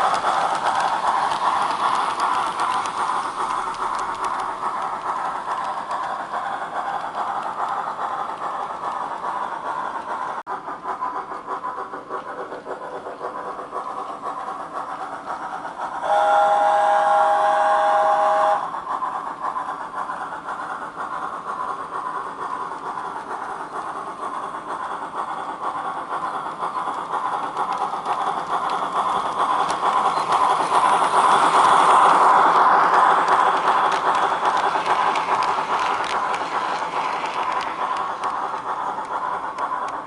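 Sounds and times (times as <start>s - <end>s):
steam locomotive running sound: 0.0s - 40.0s
two-tone steam whistle: 16.0s - 18.7s.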